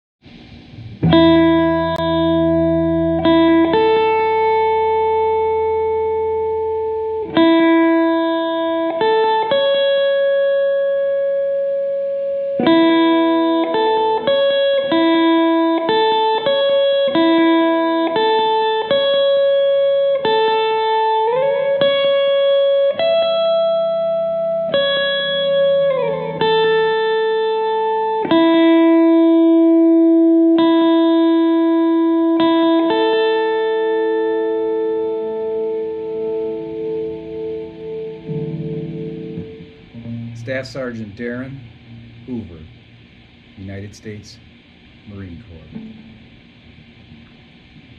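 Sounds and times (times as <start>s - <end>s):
slow guitar melody: 0.2s - 47.9s
low sustained bass: 0.4s - 7.3s, 36.4s - 47.9s.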